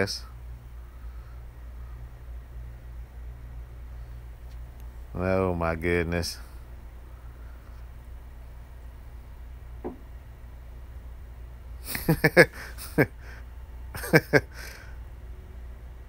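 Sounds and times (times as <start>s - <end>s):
steady low hum: 0.0s - 16.0s
man chuckling: 11.8s - 14.9s.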